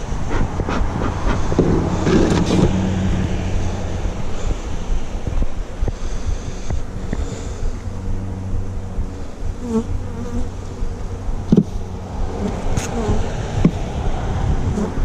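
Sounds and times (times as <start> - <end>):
honeybees buzzing: 0.0 - 15.0.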